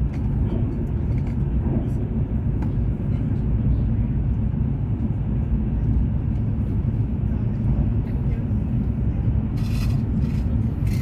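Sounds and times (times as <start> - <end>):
train cabin low rumble: 0.0 - 11.0.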